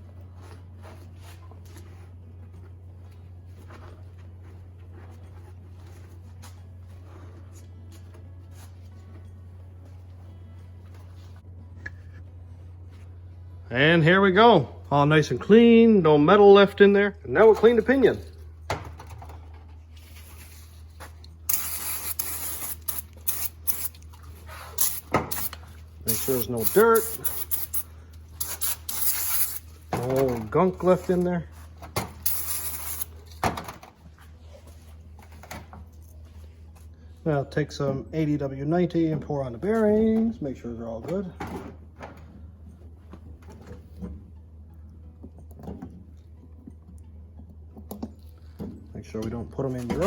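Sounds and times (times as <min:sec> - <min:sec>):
steady low hum: 0:00.0 - 0:50.0
scraping and rubbing: 0:19.8 - 0:31.2, 0:32.2 - 0:33.3
aerosol can spraying: 0:21.5 - 0:24.1, 0:24.7 - 0:29.7, 0:32.2 - 0:33.1.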